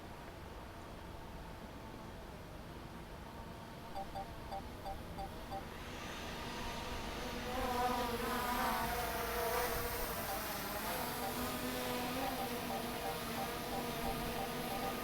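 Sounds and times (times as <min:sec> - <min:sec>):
drone propellers buzzing: 0:09.6 - 0:15.0.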